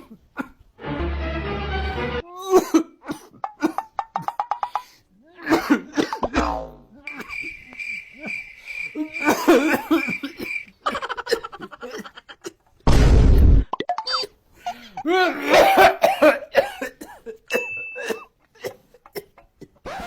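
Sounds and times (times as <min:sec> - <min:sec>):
person coughing: 0:02.5 - 0:03.9, 0:05.4 - 0:07.3, 0:09.0 - 0:10.5, 0:15.1 - 0:20.0.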